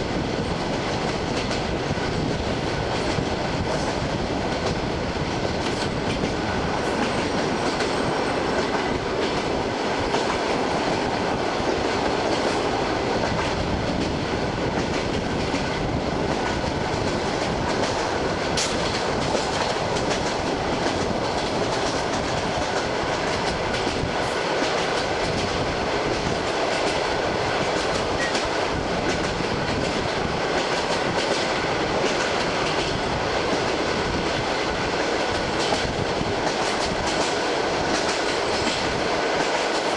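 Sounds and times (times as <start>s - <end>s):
train running noise: 0.0s - 39.9s
wheels clicking over rail joints: 5.4s - 33.8s.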